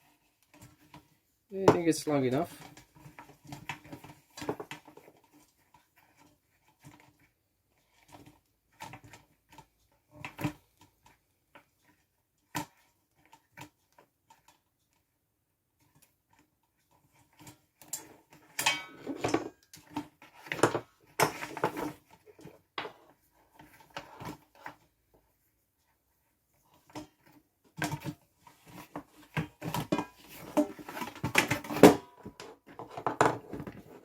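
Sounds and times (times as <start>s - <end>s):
plastic parts knocking and clicking: 0.5s - 7.2s, 17.2s - 24.9s, 26.8s - 34.0s.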